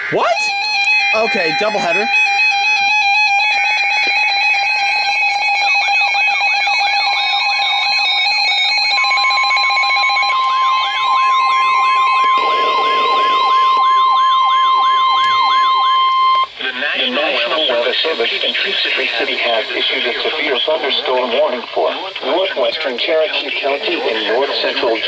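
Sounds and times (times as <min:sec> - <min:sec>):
long steady alarm tone: 0:00.0 - 0:21.6
stepped beeps: 0:04.0 - 0:16.6
warbling chirp: 0:10.2 - 0:16.6.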